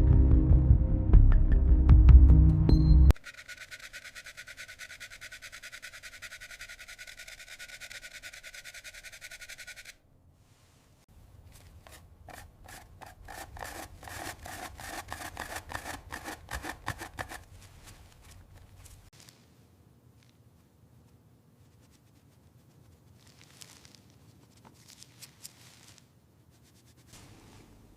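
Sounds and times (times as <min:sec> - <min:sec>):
rubbing or scrubbing strokes: 0:03.2 - 0:19.4.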